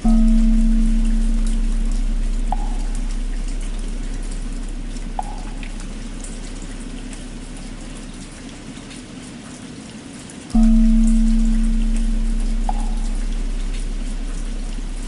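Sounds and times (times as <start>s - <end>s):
temple bell humming: 0.0s - 8.5s, 10.6s - 15.0s
steady rain: 0.0s - 15.0s.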